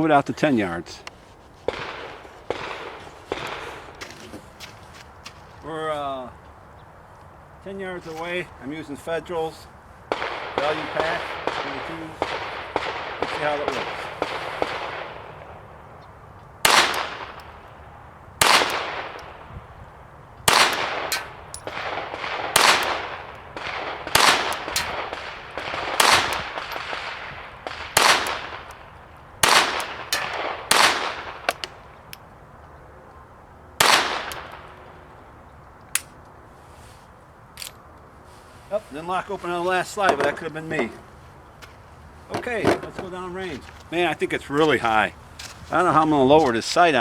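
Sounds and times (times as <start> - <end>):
pistol shots: 0.6 - 4.6, 10.1 - 32.3, 33.8 - 36.2, 39.9 - 41.0.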